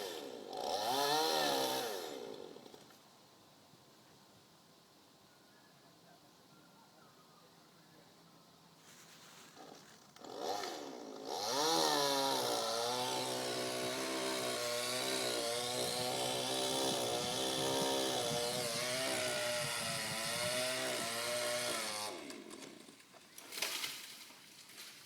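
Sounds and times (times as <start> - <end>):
chainsaw cutting wood: 0.0 - 3.0, 9.5 - 25.0.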